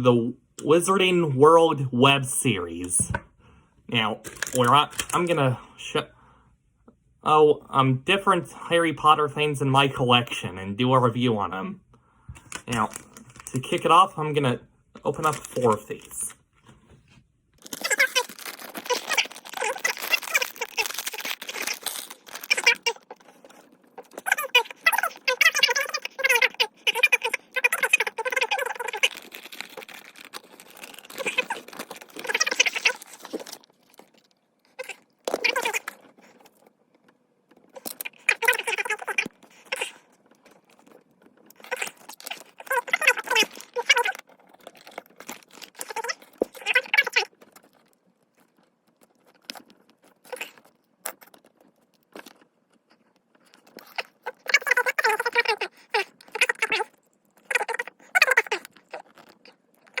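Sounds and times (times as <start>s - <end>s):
plastic packet crinkling: 4.2s - 5.4s, 12.4s - 16.4s, 17.6s - 60.0s
squeaky sped-up voice: 17.8s - 21.8s, 24.2s - 29.2s, 38.2s - 40.0s, 53.9s - 56.9s.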